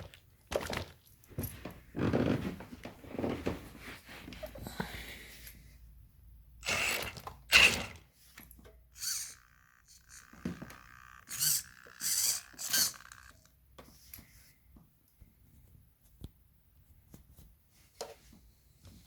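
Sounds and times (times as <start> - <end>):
rc car drivetrain whine: 6.6 - 8.0, 8.9 - 13.5
differential gears grinding: 6.6 - 8.1, 8.9 - 13.5.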